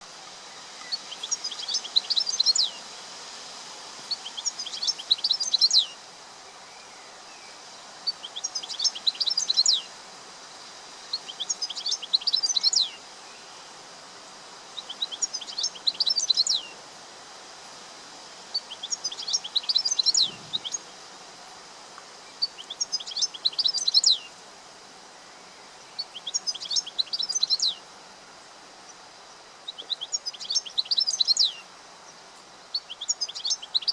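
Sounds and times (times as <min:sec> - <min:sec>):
background hiss: 0:00.0 - 0:33.9
goldfinch twittering song: 0:00.8 - 0:02.8, 0:04.1 - 0:06.0, 0:08.1 - 0:09.9, 0:11.1 - 0:13.0, 0:14.8 - 0:16.8, 0:18.5 - 0:20.8, 0:22.4 - 0:24.3, 0:25.9 - 0:27.8, 0:29.7 - 0:31.6, 0:32.7 - 0:33.9.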